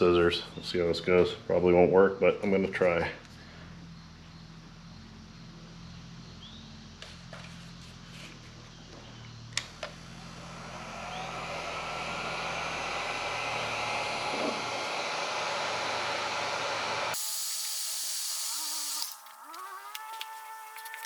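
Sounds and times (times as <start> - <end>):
heat gun blowing: 10.7 - 20.9.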